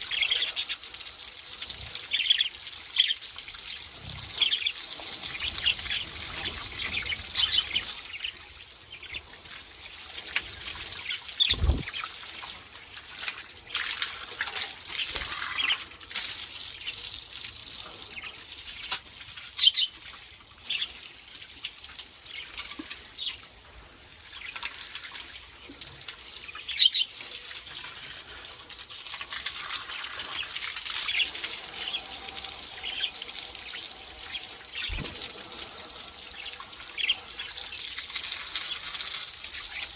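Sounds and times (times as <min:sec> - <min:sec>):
parrots chirping: 0:00.0 - 0:00.8, 0:04.3 - 0:08.4
water trickling and splashing: 0:00.0 - 0:39.9.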